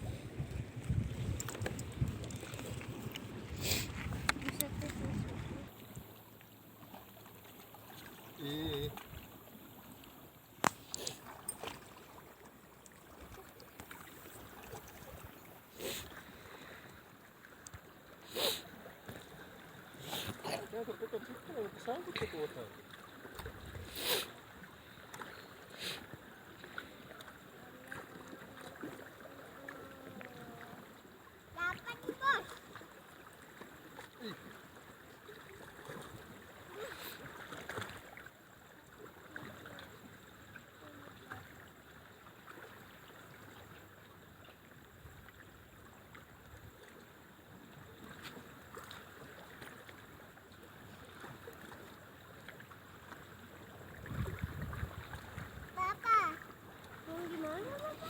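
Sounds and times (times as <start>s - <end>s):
water lapping: 0.0s - 58.0s
hissing splash: 23.8s - 24.4s.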